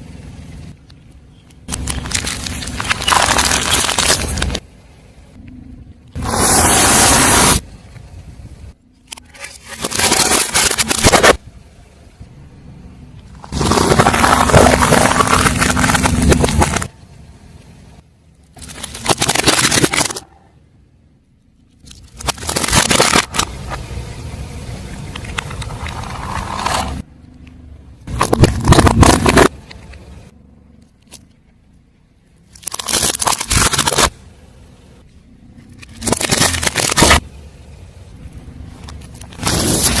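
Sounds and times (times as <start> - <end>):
tyre crushing objects: 1.7 - 4.6, 13.4 - 17.0, 18.6 - 20.3, 28.1 - 30.0, 35.8 - 37.4, 39.0 - 40.0
tyre rolling and scraping: 25.5 - 27.0.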